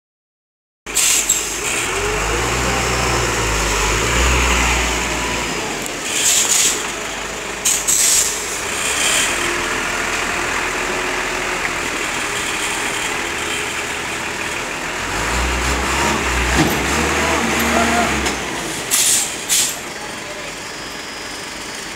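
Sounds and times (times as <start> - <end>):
diesel truck engine rumbling: 0.9 - 21.9
air hissing: 7.6 - 9.2, 18.6 - 19.8.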